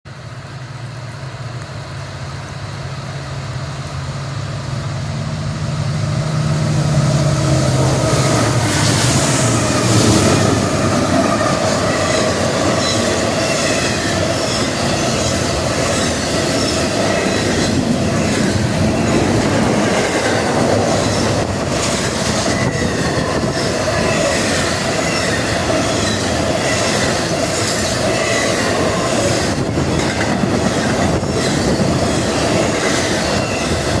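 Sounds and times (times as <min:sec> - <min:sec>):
locomotive engine hum: 0:00.1 - 0:34.0
train cars rumbling: 0:00.1 - 0:34.0
rail joint clicks: 0:00.3 - 0:34.0
high wheel squeal: 0:20.2 - 0:29.6, 0:30.8 - 0:34.0.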